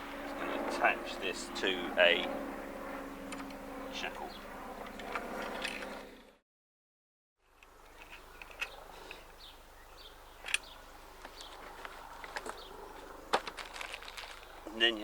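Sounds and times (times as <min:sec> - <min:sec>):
small birds chirping: 0:07.5 - 0:15.0.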